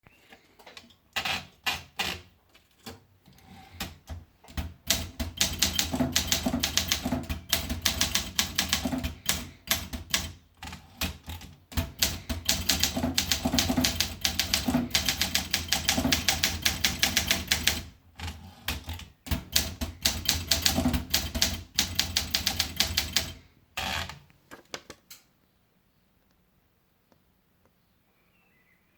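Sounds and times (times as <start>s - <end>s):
typewriter keys clacking: 3.7s - 23.4s.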